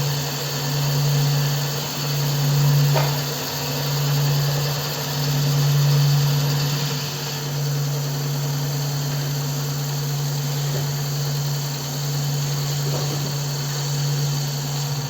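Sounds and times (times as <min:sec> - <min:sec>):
wood lathe humming: 0:00.0 - 0:15.0.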